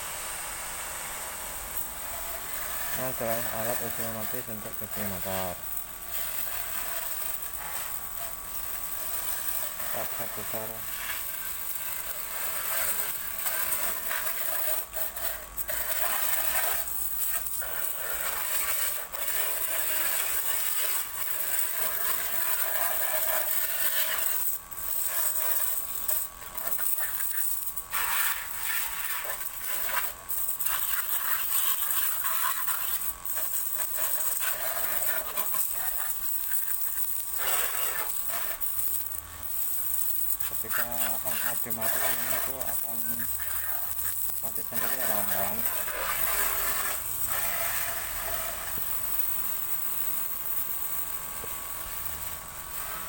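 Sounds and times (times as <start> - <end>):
faint pump motor whine: 0.0 - 53.0
water spraying hiss: 0.0 - 53.0.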